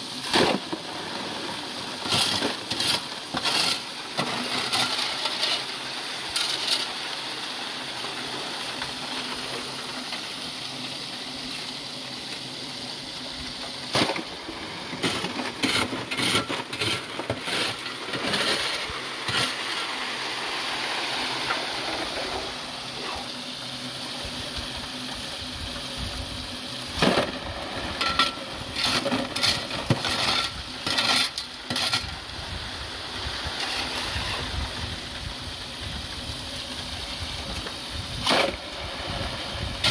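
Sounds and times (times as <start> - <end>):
gravel scraping against metal: 2.0 - 5.7, 6.3 - 7.0, 15.0 - 20.0, 28.0 - 32.2.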